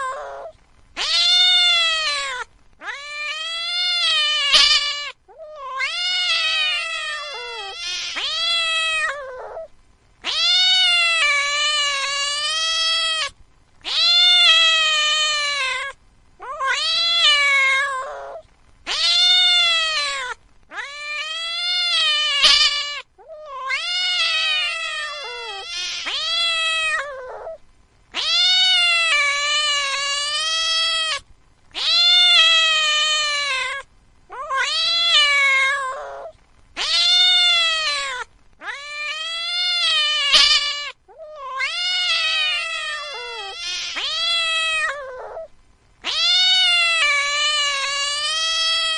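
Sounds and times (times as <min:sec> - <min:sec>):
cat yowling: 0:00.0 - 0:48.9.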